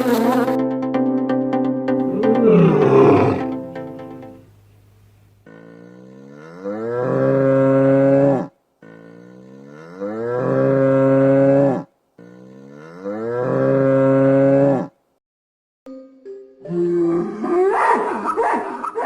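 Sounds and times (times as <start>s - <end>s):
bull bellowing: 2.0s - 3.9s, 5.4s - 14.9s.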